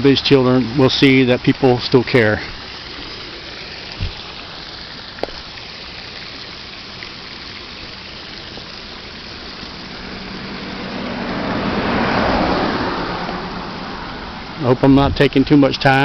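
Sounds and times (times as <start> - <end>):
waterfall rushing: 0.0 - 16.0
passing vehicle engine: 9.1 - 15.6.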